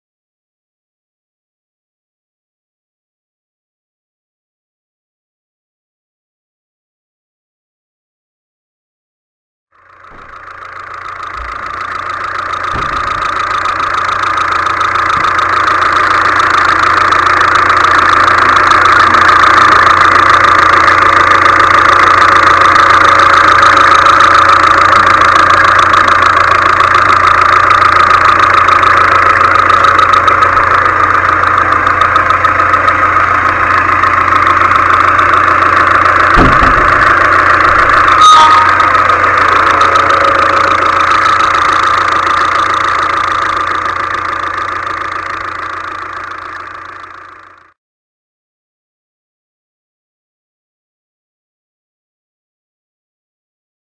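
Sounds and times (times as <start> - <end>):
diesel engine idling with knock: 9.8 - 47.8
steady whine: 34.4 - 43.8
brief chirp: 38.2 - 39.0.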